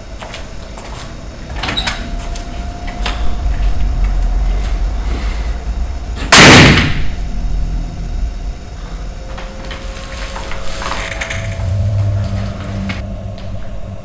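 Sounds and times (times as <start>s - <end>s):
low rumble: 0.0s - 14.0s
loud gunshot: 6.2s - 7.2s.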